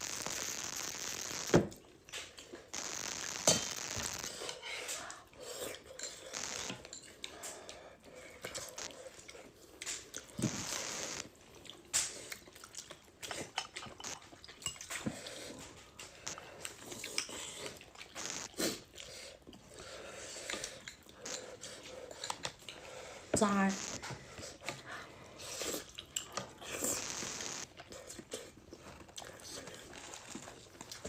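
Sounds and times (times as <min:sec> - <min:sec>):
person chewing and biting: 0:05.5 - 0:23.0, 0:24.2 - 0:31.0.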